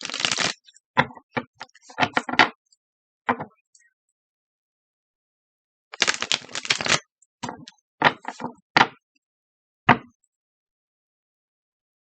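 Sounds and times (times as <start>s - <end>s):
cards being shuffled: 0.0s - 0.6s, 6.0s - 7.0s.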